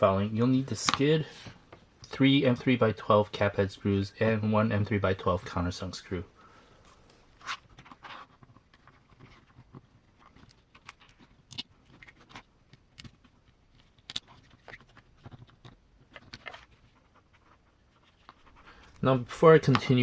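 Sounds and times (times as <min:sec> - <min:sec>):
small plastic parts and screws clicking: 0:07.8 - 0:17.0.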